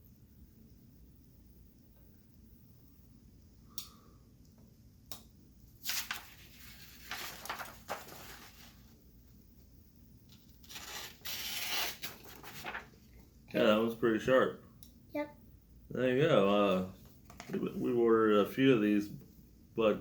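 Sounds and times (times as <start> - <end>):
rustling scraping noise: 5.9 - 8.9.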